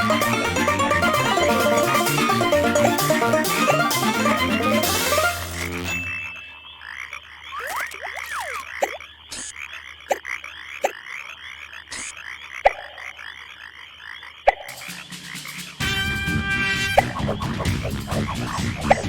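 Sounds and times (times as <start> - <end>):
frogs croaking: 5.4 - 15.8, 17.0 - 19.0.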